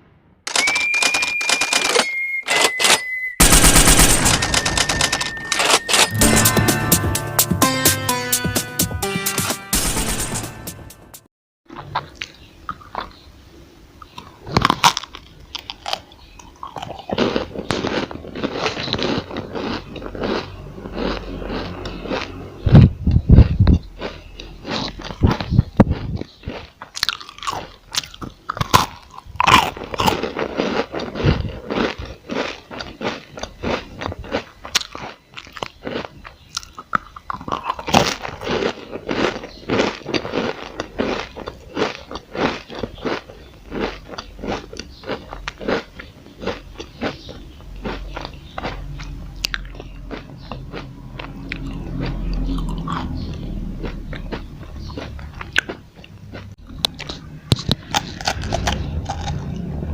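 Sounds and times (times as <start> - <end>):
crunchy chewing: 11.7 - 13.3, 14.0 - 59.9
low rumble: 56.7 - 59.9.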